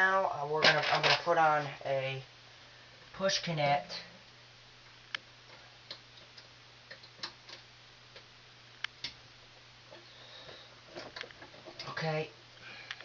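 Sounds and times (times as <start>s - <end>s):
faint electrical hum: 0.0s - 13.0s
wires clicking into connectors: 5.1s - 9.2s.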